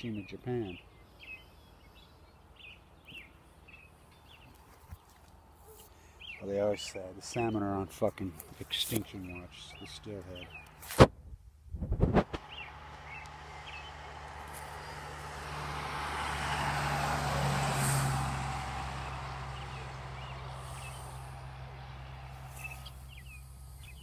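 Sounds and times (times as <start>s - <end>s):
vehicle engine droning past: 12.4s - 24.0s.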